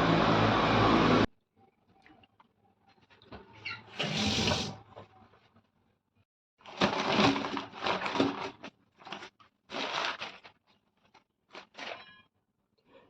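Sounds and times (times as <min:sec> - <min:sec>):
rustling and crinkling wrappings: 0:06.6 - 0:12.1.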